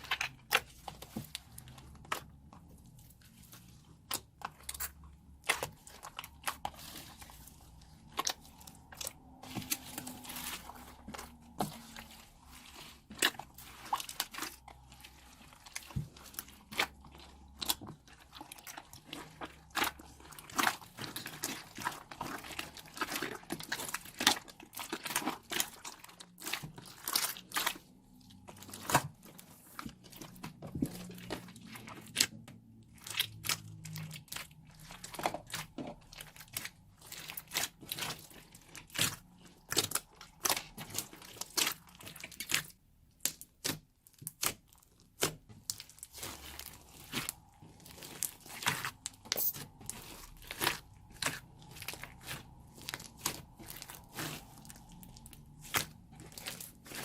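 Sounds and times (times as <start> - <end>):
slime squeezed by hand: 46.1 - 57.0.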